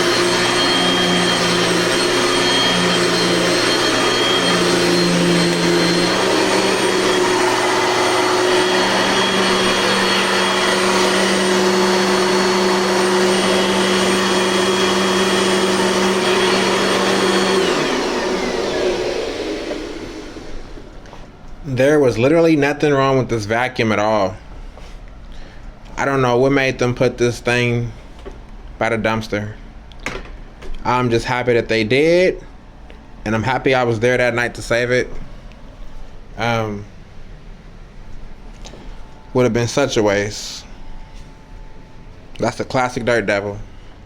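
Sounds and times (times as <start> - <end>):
vacuum cleaner motor whining: 0.0 - 21.6.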